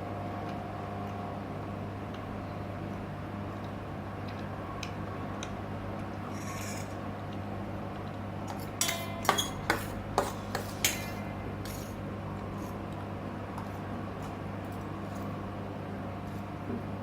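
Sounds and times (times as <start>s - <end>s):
steady low hum: 0.0s - 17.0s
utensil clinking against bowl: 8.5s - 12.0s.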